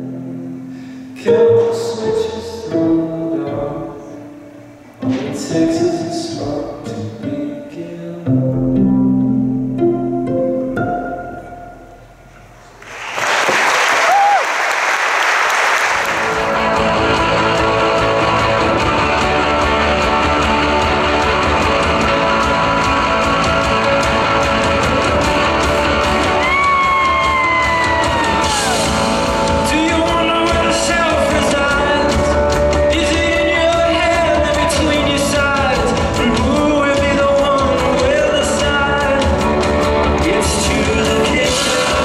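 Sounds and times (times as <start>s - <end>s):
live band playing: 15.9s - 42.0s.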